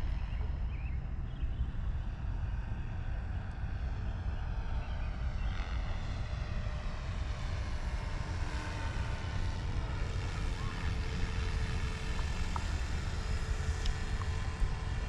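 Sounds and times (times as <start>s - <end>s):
helicopter rotor rumble: 0.0s - 15.0s.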